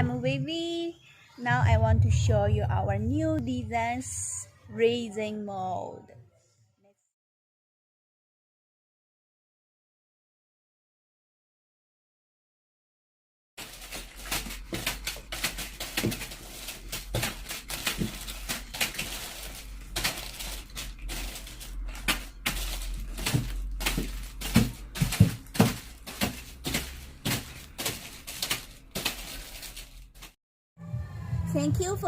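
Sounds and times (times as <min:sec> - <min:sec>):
low steady hum: 0:01.4 - 0:05.2.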